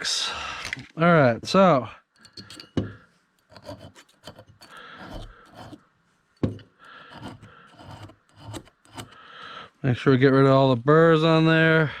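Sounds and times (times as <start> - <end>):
file rasping on metal: 3.5 - 5.8, 6.5 - 9.2.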